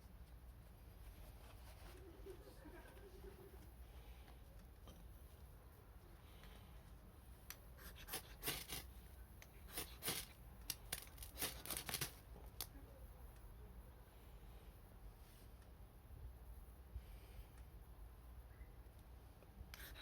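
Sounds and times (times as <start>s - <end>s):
faint low hum: 0.0s - 20.0s
wood fire crackling: 8.4s - 12.7s.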